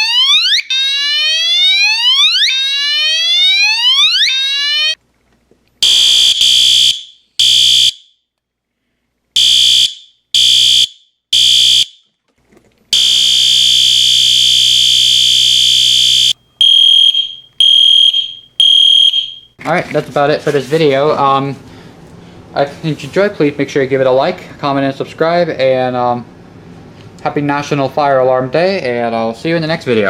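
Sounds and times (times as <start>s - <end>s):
fire alarm whoop sweep: 0.0s - 5.0s, 13.0s - 19.6s
pulsing alarm horn: 5.8s - 8.1s, 9.4s - 12.0s, 13.0s - 19.6s
steady alarm horn tone: 5.8s - 8.1s, 9.4s - 12.0s, 13.0s - 19.6s
fire alarm horn beeping: 5.8s - 8.2s, 9.4s - 12.0s, 13.0s - 19.6s.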